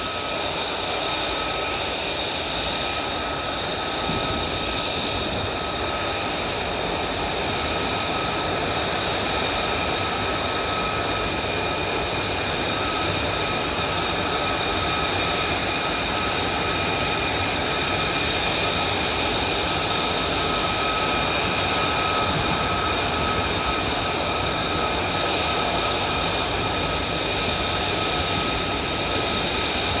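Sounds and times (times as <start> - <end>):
jet engine roar and whine: 0.0 - 30.0.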